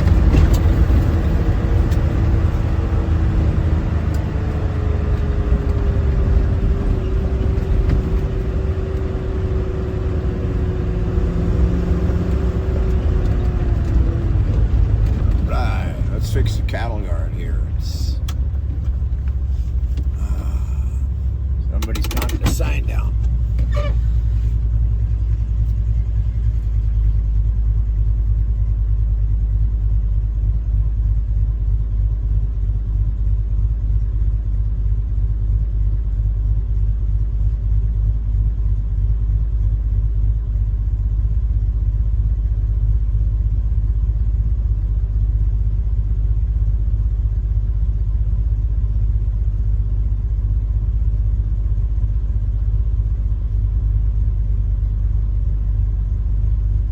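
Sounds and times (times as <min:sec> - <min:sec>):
vehicle engine rumble: 0:00.0 - 0:56.9.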